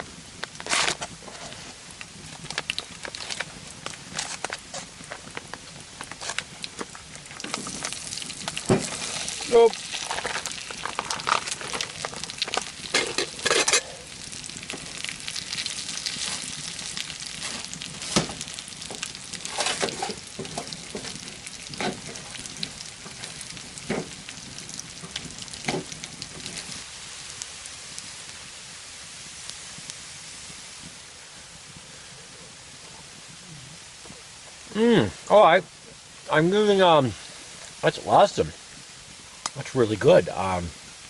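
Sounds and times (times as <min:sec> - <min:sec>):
food sizzling in a pan: 0:00.0 - 0:31.1
utensil scraping a pan: 0:08.8 - 0:14.0, 0:17.4 - 0:22.4.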